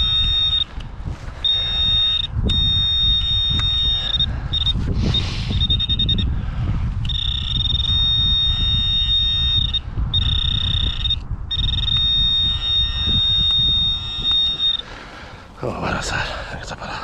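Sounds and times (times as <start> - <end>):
metal detector high-pitched tone: 0.0 - 0.7, 1.4 - 6.3, 7.0 - 14.9
wind rumble on microphone: 0.0 - 17.0.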